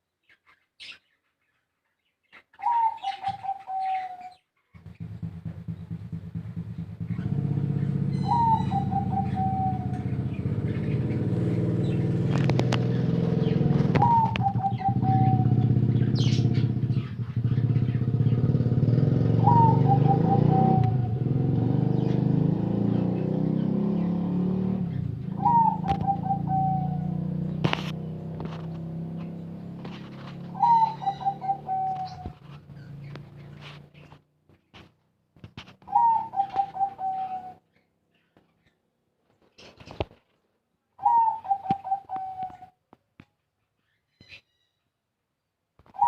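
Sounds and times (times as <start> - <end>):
dove cooing: 2.6 - 4.4, 7.2 - 18.4, 19.2 - 22.3, 24.8 - 28.7, 29.8 - 33.6, 35.8 - 37.6, 41.0 - 42.8
engine drone: 4.8 - 34.0.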